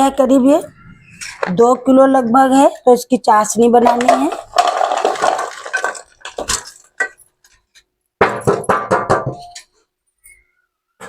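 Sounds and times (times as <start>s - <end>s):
sharp percussive knocks: 8.2s - 9.5s.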